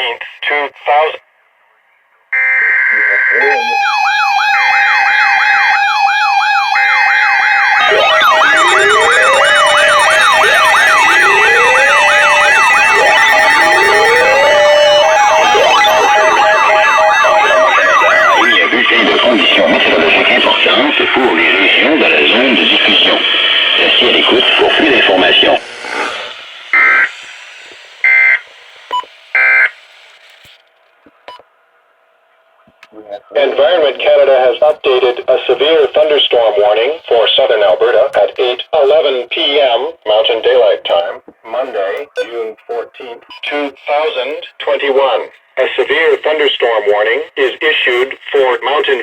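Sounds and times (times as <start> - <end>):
siren yelp: 2.4 - 30.2
siren wails: 2.4 - 30.5
digital data tone bursts: 7.8 - 30.3, 42.1 - 42.5.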